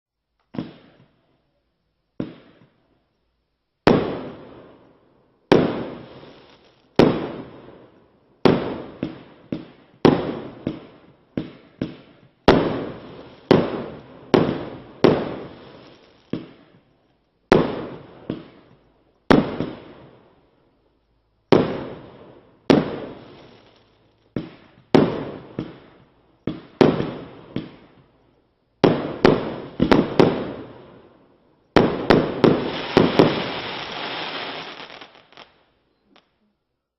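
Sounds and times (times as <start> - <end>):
small firework pops: 0.4 - 1.4, 2.1 - 2.9, 3.8 - 20.3, 21.5 - 31.1, 31.7 - 36.4
firework bangs: 0.5 - 1.1, 2.2 - 2.8, 3.8 - 4.8, 5.5 - 16.9, 17.5 - 18.7, 19.3 - 20.2, 21.5 - 28.1, 28.8 - 35.6.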